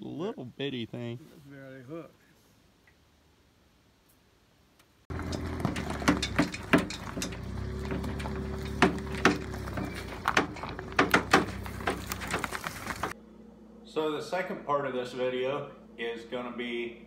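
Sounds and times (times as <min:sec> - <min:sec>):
irregular knocks and clatter: 0:05.1 - 0:13.2.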